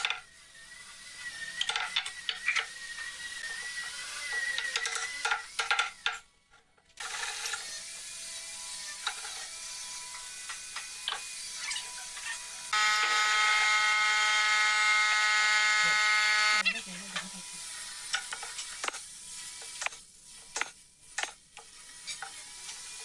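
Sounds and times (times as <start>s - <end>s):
scattered clicks and knocks: 4.4s - 7.2s
woodworking machine whining: 7.1s - 17.9s.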